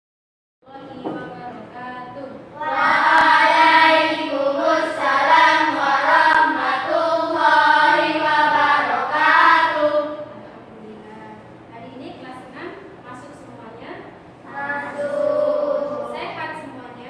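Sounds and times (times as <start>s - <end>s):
children chanting in unison: 2.6s - 10.4s, 14.5s - 16.2s.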